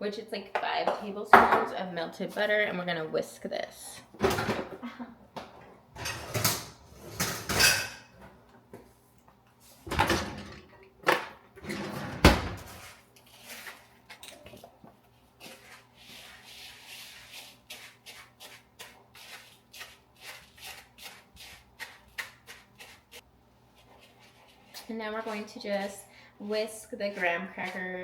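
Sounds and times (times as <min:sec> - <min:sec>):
bowl and utensils clattering: 0:06.0 - 0:08.2
whisk scraping in mixing bowl: 0:15.1 - 0:28.0.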